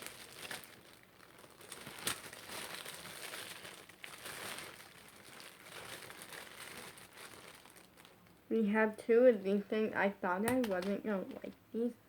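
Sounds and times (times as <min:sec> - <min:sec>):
plastic packaging crinkling: 0:00.0 - 0:08.4, 0:10.5 - 0:11.5.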